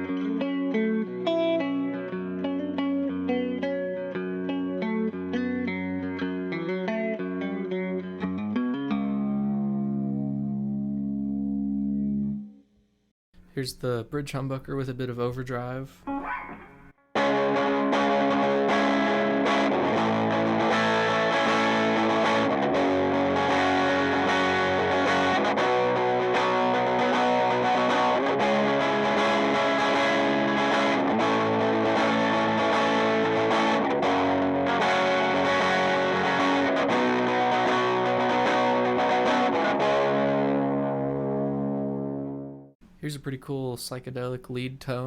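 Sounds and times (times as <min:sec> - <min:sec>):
overdriven electric guitar strumming chords: 0:00.0 - 0:12.6, 0:16.0 - 0:42.8.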